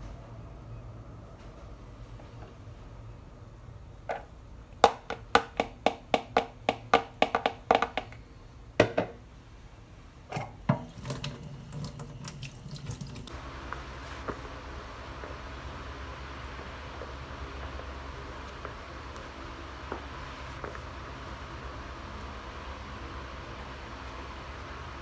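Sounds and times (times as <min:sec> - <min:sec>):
tap running: 0:10.7 - 0:25.0.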